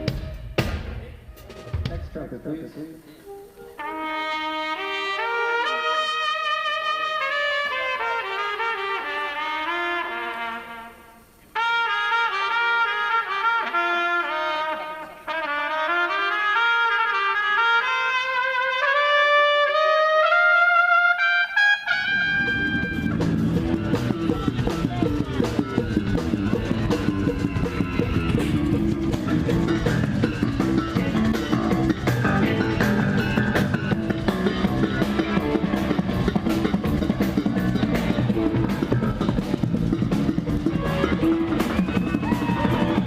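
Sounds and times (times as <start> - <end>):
steady drum beat: 0.0 - 2.4, 22.4 - 43.0
band playing: 0.0 - 43.0
trumpet playing rising notes: 3.2 - 43.0.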